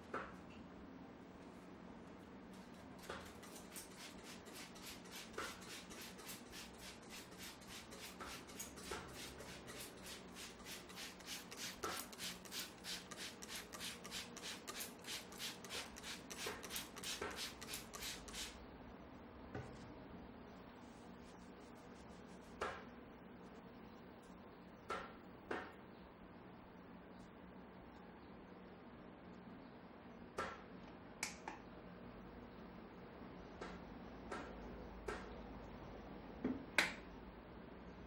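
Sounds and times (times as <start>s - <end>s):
hands rubbing hair and scalp: 3.4s - 18.6s, 20.8s - 23.6s.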